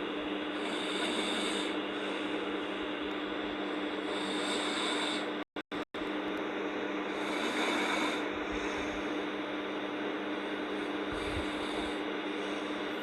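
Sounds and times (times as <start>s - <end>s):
steady humming background noise: 0.0s - 13.0s
person snoring: 0.5s - 2.7s, 3.9s - 5.4s, 7.1s - 9.2s, 10.6s - 13.0s.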